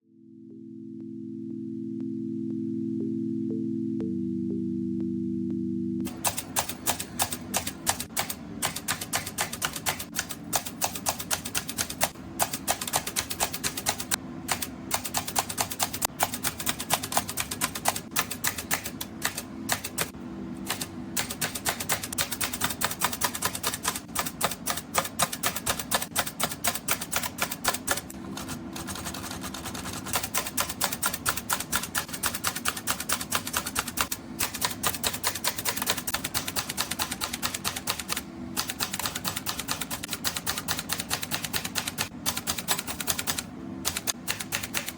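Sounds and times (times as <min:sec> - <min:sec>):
soft background music: 0:00.0 - 0:08.0
manual typewriter typing: 0:06.1 - 0:44.9.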